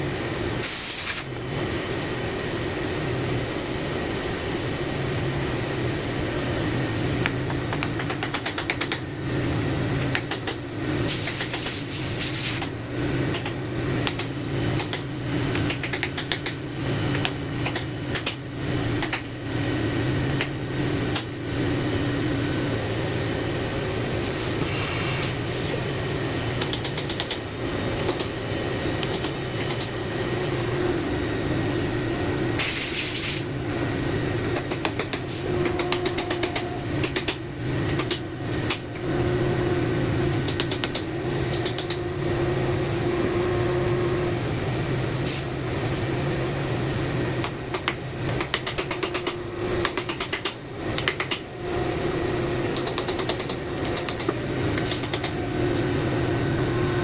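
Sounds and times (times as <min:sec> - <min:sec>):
steady mechanical hum: 0:00.0 - 0:57.0
short bursts of hiss: 0:00.6 - 0:01.3, 0:11.1 - 0:12.6, 0:32.6 - 0:33.4.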